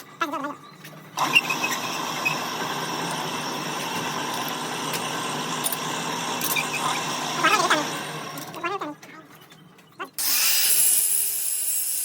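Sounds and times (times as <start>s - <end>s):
engine starting and running: 1.0s - 8.8s.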